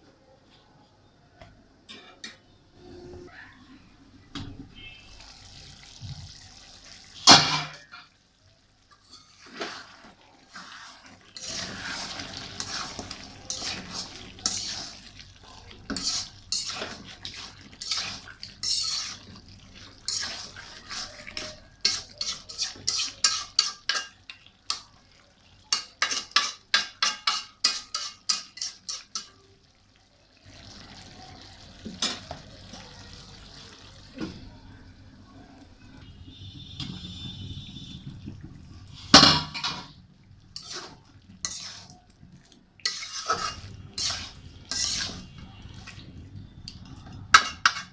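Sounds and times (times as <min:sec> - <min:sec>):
spoon scraping in cooking pot: 0:09.0 - 0:24.9, 0:25.7 - 0:29.4, 0:36.0 - 0:47.9
spoon clinking against pot: 0:20.1 - 0:24.9, 0:25.7 - 0:29.4, 0:47.4 - 0:47.9.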